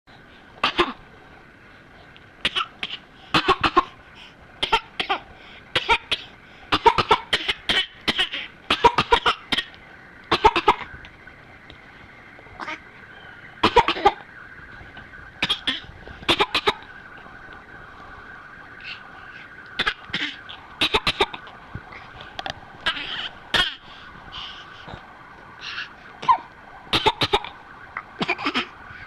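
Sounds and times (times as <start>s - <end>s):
child cough-laughing: 0.6s - 1.0s, 2.5s - 3.9s, 5.8s - 9.7s, 10.3s - 10.9s, 13.6s - 14.2s, 15.4s - 16.8s, 19.8s - 21.4s, 26.2s - 27.5s, 28.2s - 28.7s.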